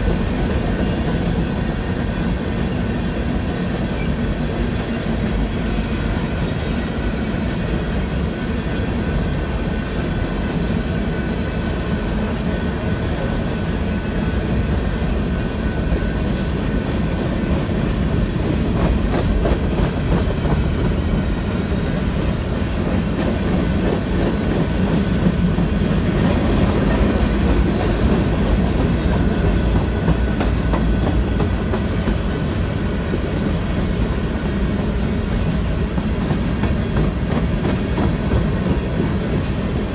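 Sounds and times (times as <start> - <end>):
train cars rumbling past: 0.0 - 39.9
wheels clicking on rails: 11.4 - 39.9.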